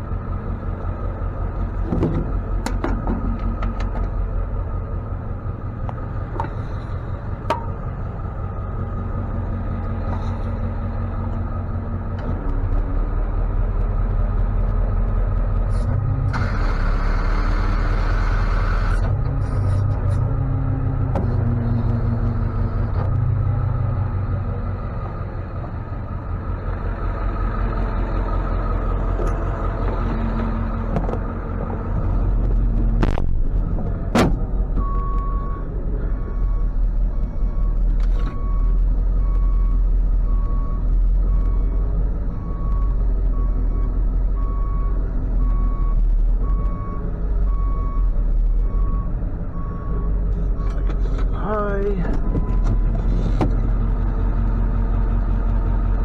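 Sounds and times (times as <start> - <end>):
truck engine running: 0.0 - 56.0
reversing alarm beeping: 34.8 - 41.8.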